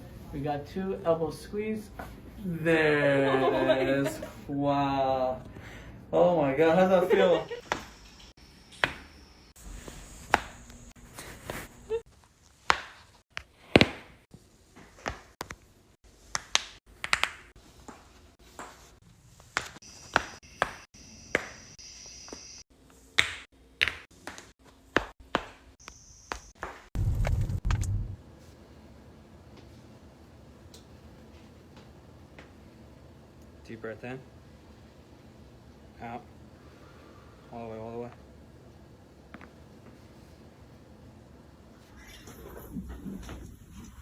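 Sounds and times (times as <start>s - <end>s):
low rumble: 27.0s - 28.2s.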